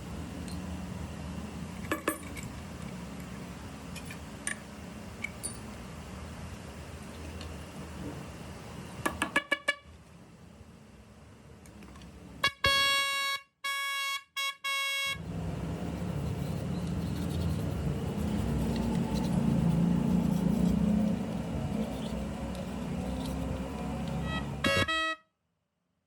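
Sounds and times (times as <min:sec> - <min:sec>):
car horn honking: 0:09.3 - 0:09.9, 0:12.4 - 0:15.2, 0:24.2 - 0:25.3.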